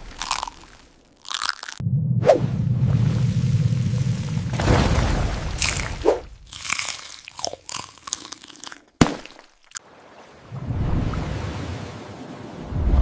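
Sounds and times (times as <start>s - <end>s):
crunchy biting and chewing: 0.0s - 1.8s, 6.5s - 9.8s
low rumble: 1.8s - 6.5s.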